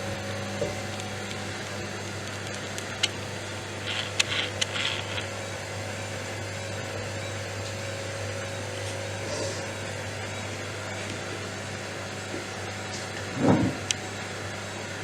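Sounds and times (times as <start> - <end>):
steady low hum: 0.0 - 12.3
sharp clicks: 2.2 - 5.3.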